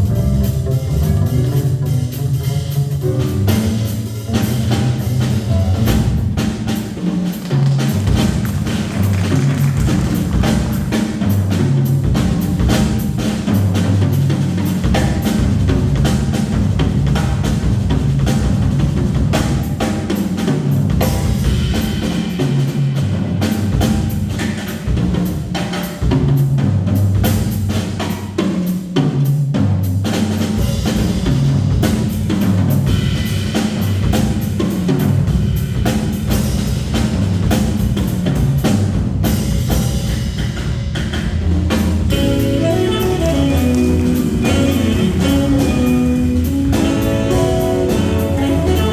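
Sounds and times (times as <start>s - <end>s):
bass line: 0.0s - 6.8s, 7.6s - 21.5s, 41.7s - 48.9s
jazz drum kit playing: 0.0s - 48.9s.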